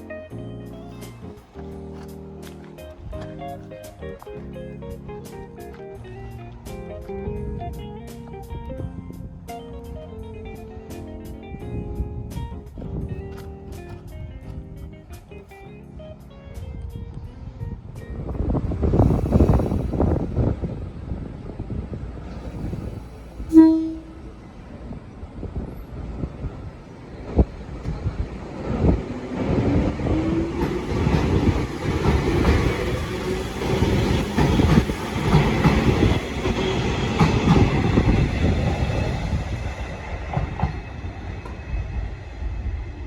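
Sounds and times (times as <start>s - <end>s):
train passing whine and rumble: 0.0s - 43.0s
train horn blast: 23.4s - 24.5s.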